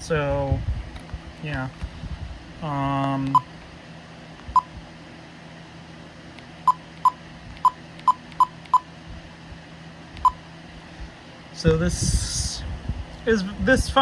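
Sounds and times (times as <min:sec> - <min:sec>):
faint steady hum: 0:00.0 - 0:14.0
keypad key-press beeps: 0:03.3 - 0:03.5, 0:04.5 - 0:04.7, 0:06.7 - 0:08.9, 0:10.2 - 0:10.4.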